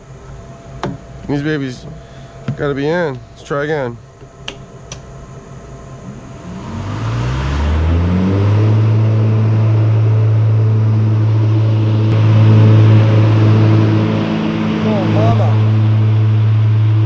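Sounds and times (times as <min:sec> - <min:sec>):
electric mower motor whine: 0:04.0 - 0:17.0.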